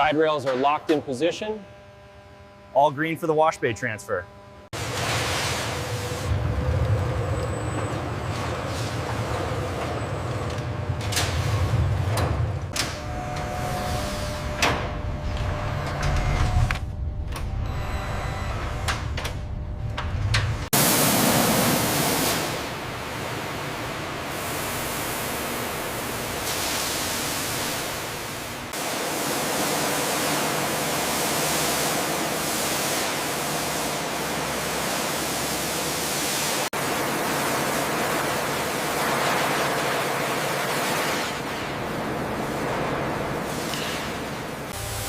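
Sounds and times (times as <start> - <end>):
pressure washer spraying water: 4.8 - 6.4, 20.8 - 45.0.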